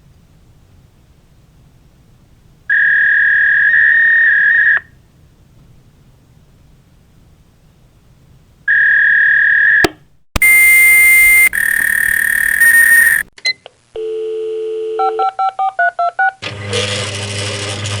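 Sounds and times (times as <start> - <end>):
dial tone: 10.4 - 13.2, 14.0 - 15.5
fax machine mechanical whirring: 10.4 - 13.2
dialing beeps: 10.4 - 13.3
fax modem beeps and screeches: 10.4 - 13.3.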